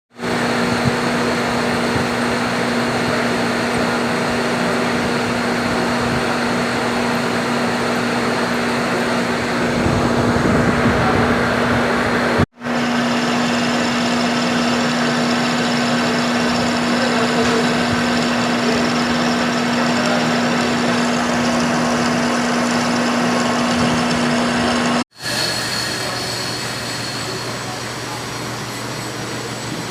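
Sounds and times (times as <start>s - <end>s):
machine tool cutting metal: 12.7s - 29.9s.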